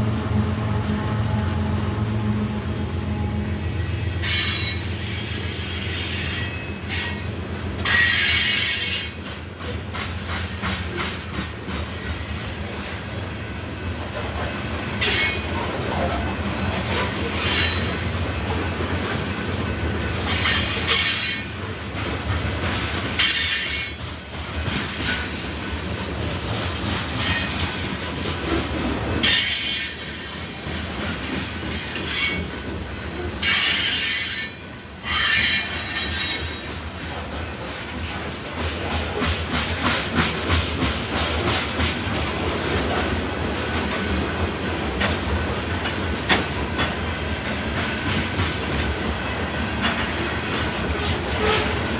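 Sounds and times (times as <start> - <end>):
train wheel squeals: 1.4 - 18.6, 19.3 - 22.0, 23.1 - 26.2, 26.8 - 37.9, 49.7 - 51.9
wheels clacking over rail joints: 6.2 - 13.3, 14.0 - 51.9.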